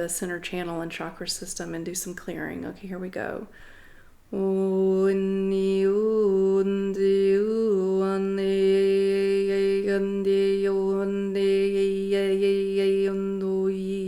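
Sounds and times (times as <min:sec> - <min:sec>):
woman singing sustained tone: 0:04.3 - 0:14.0.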